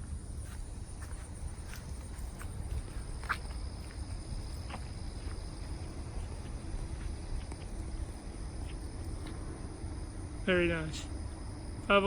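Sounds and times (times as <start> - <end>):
light footsteps: 0.0 - 9.6
faint high-pitched hum: 0.0 - 12.0.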